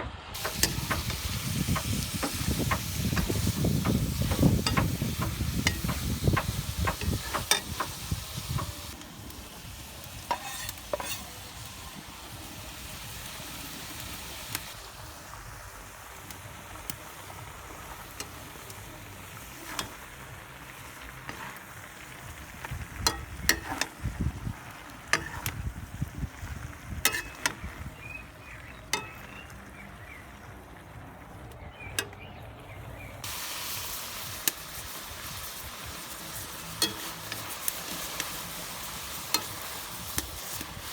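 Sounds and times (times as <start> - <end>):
food sizzling in a pot: 0.4 - 29.4, 33.2 - 40.9
utensil knocking against pot: 2.6 - 8.8.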